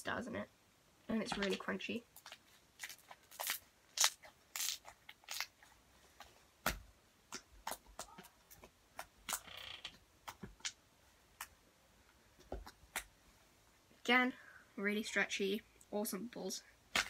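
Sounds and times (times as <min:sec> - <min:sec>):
bead slime crackling: 0:01.4 - 0:05.8.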